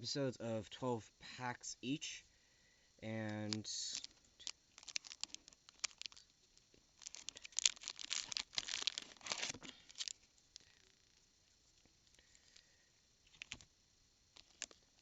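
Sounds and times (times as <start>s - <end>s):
plastic wrappers crinkling: 3.5s - 10.9s, 13.2s - 13.7s, 14.3s - 15.0s.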